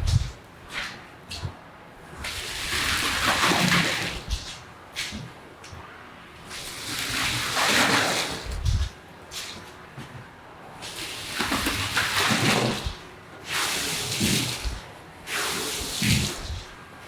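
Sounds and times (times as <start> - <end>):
low thud: 0.0 - 0.4
wet carpet swishing strokes: 0.0 - 1.5, 4.1 - 5.2, 8.2 - 9.6, 12.5 - 13.0, 14.2 - 14.8, 15.7 - 16.8.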